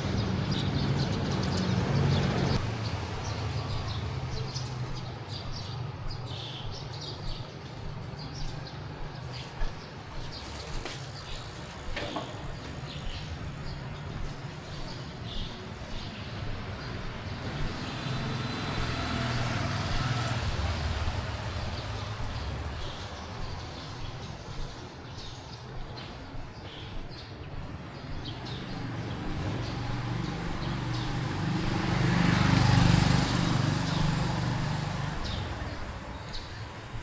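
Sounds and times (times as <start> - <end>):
street traffic: 0.0 - 37.0
vehicle engine running: 10.2 - 23.7, 28.1 - 36.6.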